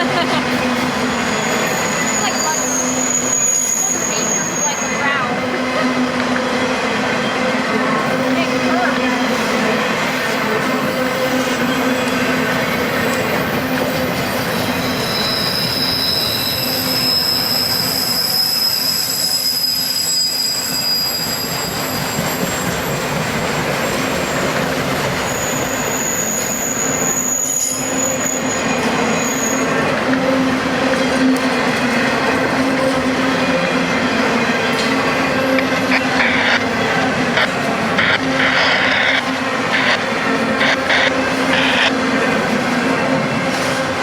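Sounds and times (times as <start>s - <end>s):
freight train cars rumbling past: 0.0s - 44.0s
high-pitched wheel squeals: 1.0s - 5.4s, 13.8s - 23.0s, 25.1s - 29.8s.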